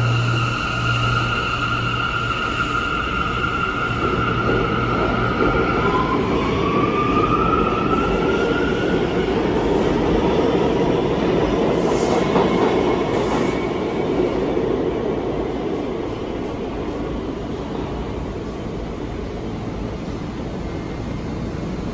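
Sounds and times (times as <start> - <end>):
subway train motor whine: 0.0 - 15.4.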